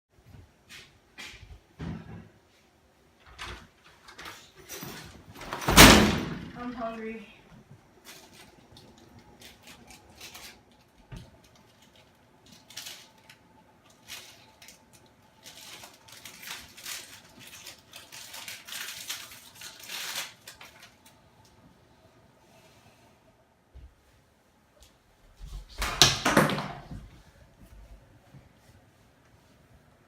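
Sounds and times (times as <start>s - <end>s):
snack wrapper crinkling: 8.0s - 21.2s.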